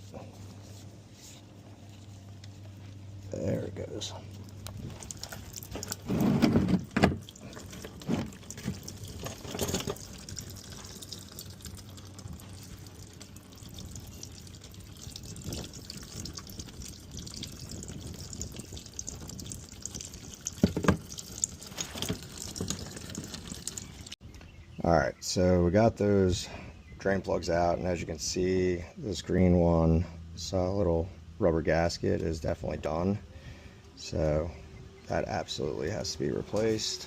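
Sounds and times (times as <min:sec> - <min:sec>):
oil trickling into drain pan: 0:04.3 - 0:24.2.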